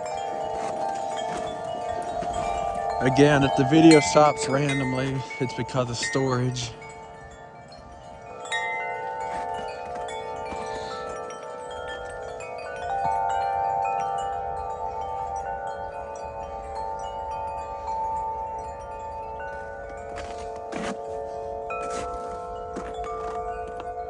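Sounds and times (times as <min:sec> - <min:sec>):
wind chimes ringing: 0:00.0 - 0:24.0.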